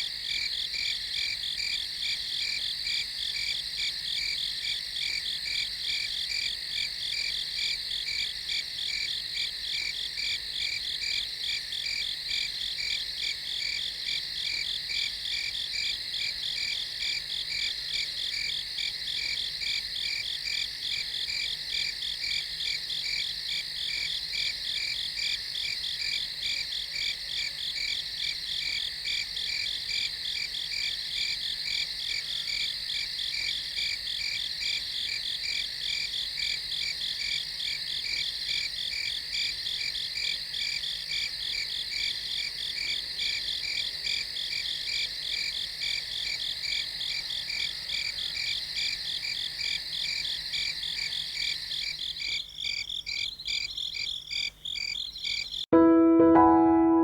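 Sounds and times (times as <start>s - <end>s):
crickets chirping: 0.0s - 55.6s.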